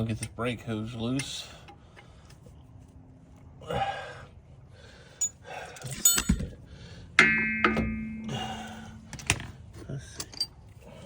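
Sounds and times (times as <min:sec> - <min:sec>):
wrench and metal parts clinking: 0:05.2 - 0:06.5
metal knock: 0:07.2 - 0:08.3
loud ringing metallic clank: 0:07.2 - 0:09.0.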